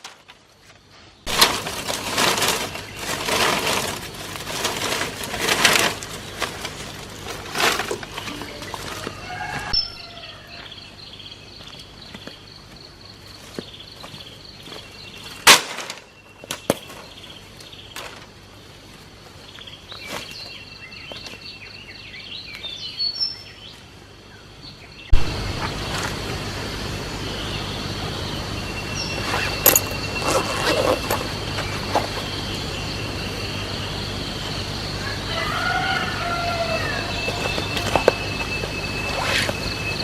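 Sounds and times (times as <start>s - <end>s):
birds chirping: 5.6s - 15.5s, 19.3s - 40.0s
steady hiss: 25.2s - 35.1s.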